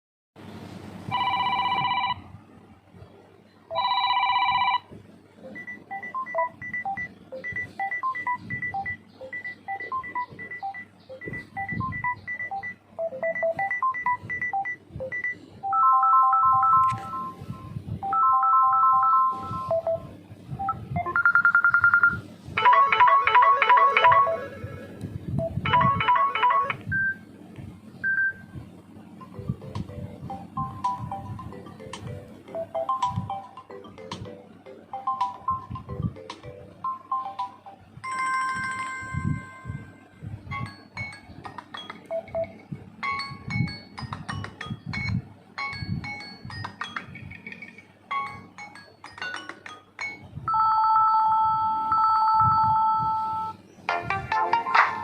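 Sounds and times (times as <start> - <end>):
steady low hum: 0.4 - 55.0
bell-like phone ringtone: 1.1 - 2.2, 3.7 - 4.9, 5.5 - 20.1, 20.7 - 24.8, 25.7 - 26.8, 30.4 - 47.1, 48.1 - 53.5
repeated melodic ringtone notes: 5.5 - 24.7, 25.4 - 27.2, 29.2 - 53.5
electronic tone patterns: 5.5 - 27.2, 29.2 - 38.2.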